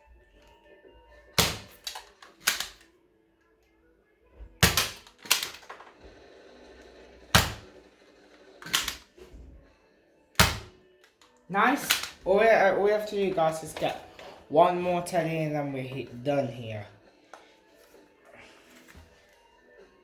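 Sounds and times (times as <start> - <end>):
toy blaster plastic clacks: 1.7 - 2.8, 4.7 - 5.9, 8.6 - 9.0.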